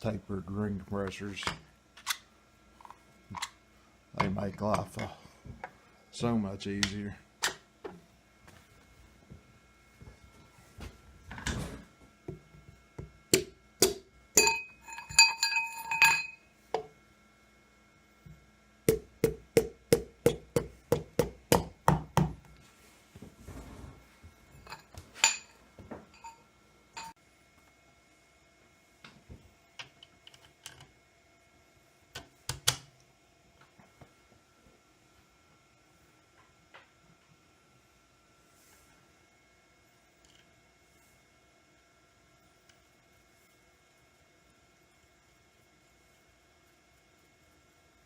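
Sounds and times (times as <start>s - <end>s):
metal engine parts clinking: 14.4s - 16.4s, 24.6s - 25.5s, 26.1s - 26.4s.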